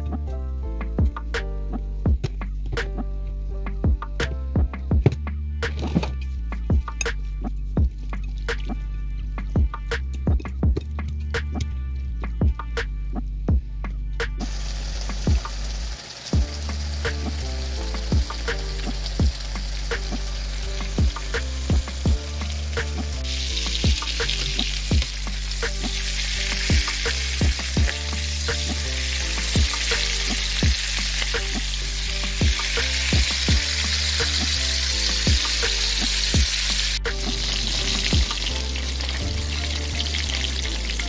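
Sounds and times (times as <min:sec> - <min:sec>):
background music with beat: 0:00.0 - 0:41.0
chicken sizzling in a pan: 0:14.4 - 0:41.0.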